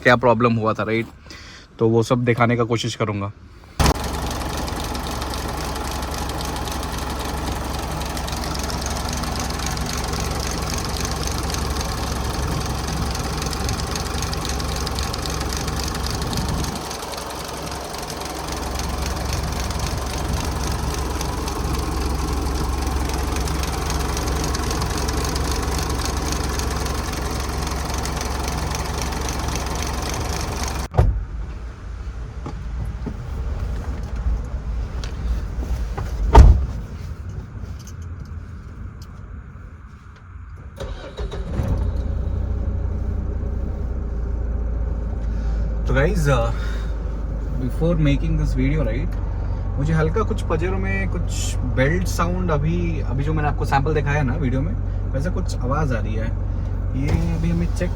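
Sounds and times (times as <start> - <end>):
rattling whining belt noise: 3.8 - 30.9
car engine running: 3.8 - 37.1, 40.8 - 57.9.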